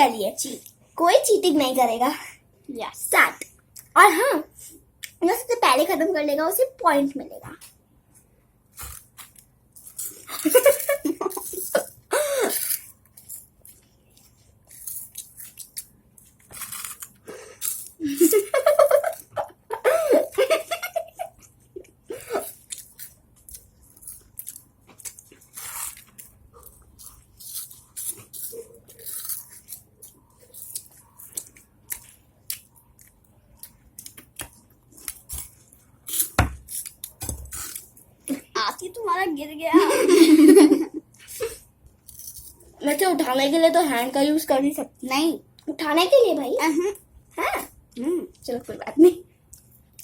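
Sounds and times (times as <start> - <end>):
girl's high voice: 4.0 - 4.6, 38.3 - 40.0
chips being crunched and chewed: 14.7 - 18.2, 22.5 - 32.7.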